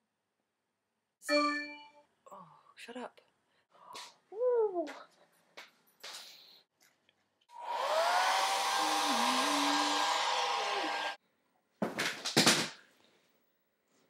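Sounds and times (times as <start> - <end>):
electric blower motor whining: 7.5 - 11.2.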